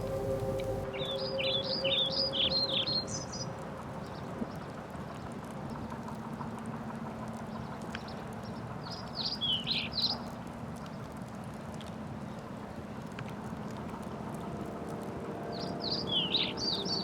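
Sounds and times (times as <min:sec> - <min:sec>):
bird chirps: 0:00.0 - 0:03.5, 0:15.5 - 0:17.0
low steady hum: 0:00.0 - 0:04.8.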